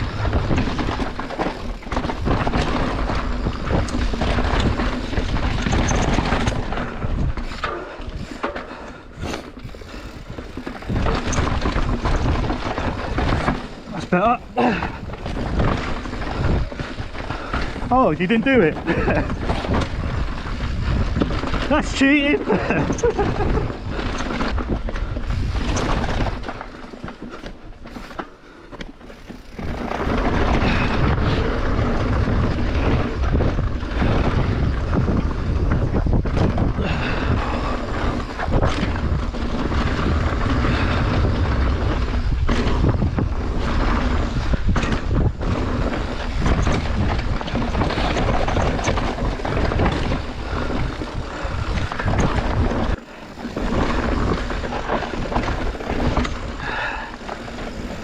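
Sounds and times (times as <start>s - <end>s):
bike tyre roar and rattling: 0.0s - 58.0s
wind buffeting microphone: 0.0s - 58.0s.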